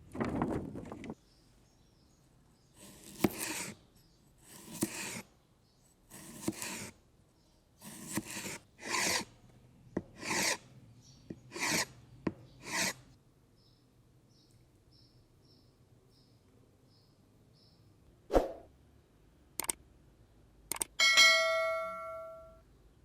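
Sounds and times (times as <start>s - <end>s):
cleaver blade scraping: 2.8s - 3.8s, 4.5s - 5.2s, 6.1s - 6.9s, 7.8s - 9.3s, 10.2s - 10.6s, 11.5s - 11.9s, 12.6s - 13.0s
sharp clicks: 19.6s - 19.8s, 20.7s - 21.0s.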